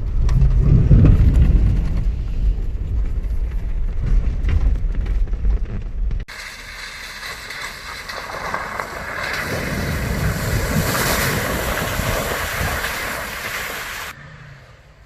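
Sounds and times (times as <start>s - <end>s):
tyres splashing through mud: 6.3s - 14.2s.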